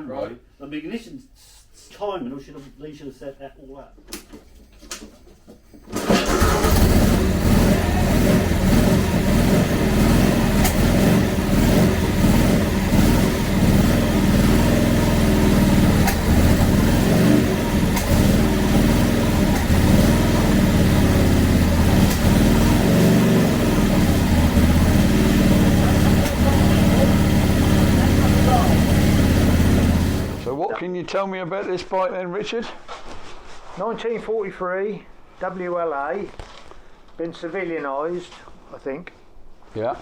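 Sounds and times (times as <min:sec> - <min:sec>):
motorcycle engine starting and revving: 0:05.9 - 0:30.6.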